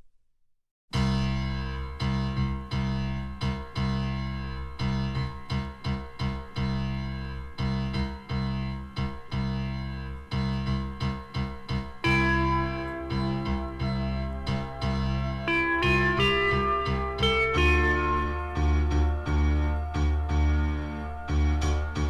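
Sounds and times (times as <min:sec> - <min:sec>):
keyboard notes: 0:01.0 - 0:22.0
steady bass: 0:01.0 - 0:22.0
instrument holding notes: 0:12.1 - 0:21.9.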